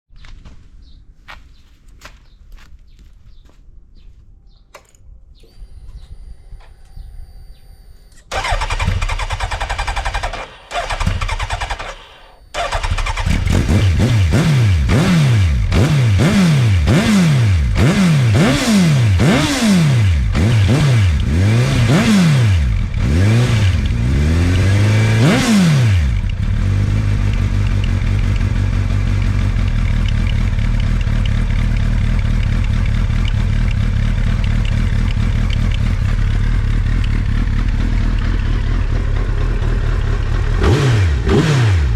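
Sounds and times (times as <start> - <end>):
motorcycle engine revving and idling: 8.3 - 41.9.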